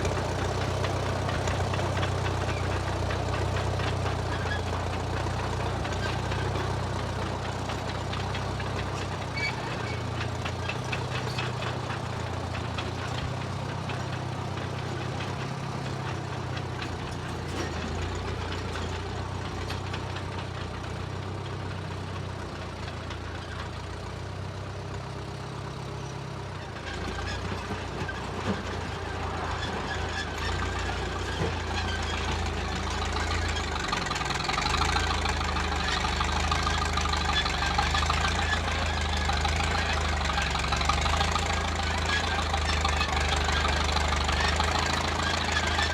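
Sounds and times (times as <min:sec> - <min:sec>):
bulldozer engine running: 0:00.0 - 0:45.9.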